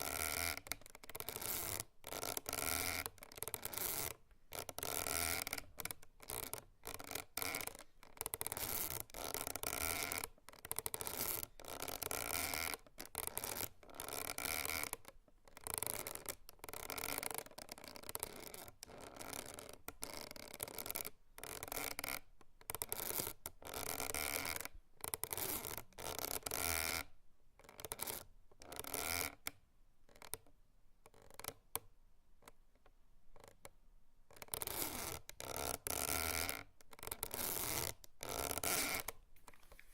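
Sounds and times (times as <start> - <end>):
rope creaking and rubbing: 0.1 - 15.0, 34.5 - 39.9.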